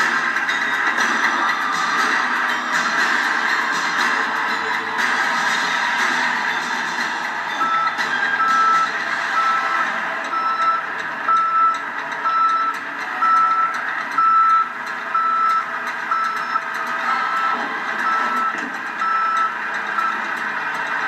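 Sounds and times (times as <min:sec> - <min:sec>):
machinery noise: 0:00.0 - 0:21.0
reversing alarm beeping: 0:07.6 - 0:20.3.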